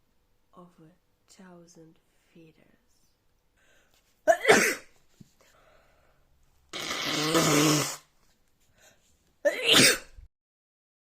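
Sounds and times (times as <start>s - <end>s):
person sneezing: 4.3s - 4.9s, 6.7s - 8.1s, 9.5s - 10.2s.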